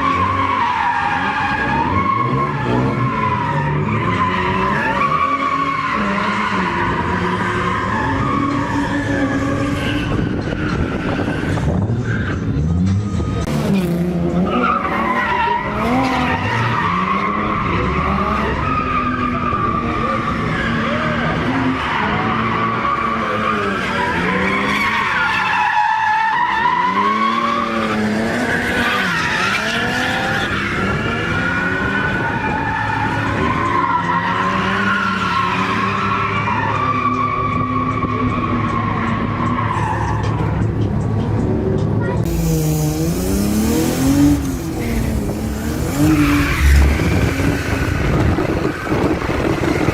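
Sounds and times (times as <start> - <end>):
car engines revving: 0.0 - 49.9
tyre squeal: 21.8 - 40.5, 42.3 - 49.9.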